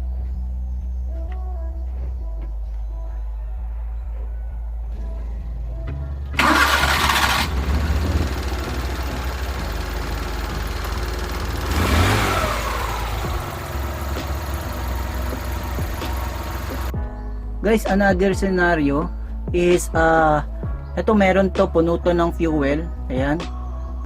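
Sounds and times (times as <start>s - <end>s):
car engine idling and revving: 5.8s - 17.1s
engine starter cranking: 6.4s - 16.9s.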